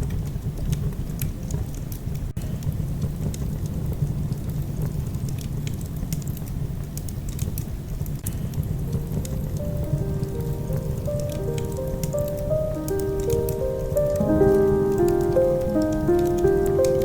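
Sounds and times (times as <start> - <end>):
fire crackling and popping: 0.0 - 17.0
low rumble of flames: 0.0 - 17.0
soft music with held notes: 8.2 - 17.0.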